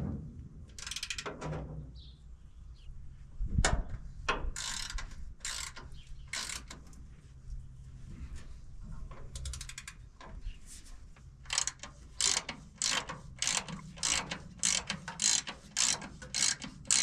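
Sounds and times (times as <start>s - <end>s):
sharp metallic clicks: 0.7s - 1.4s, 4.3s - 6.9s, 11.5s - 17.0s.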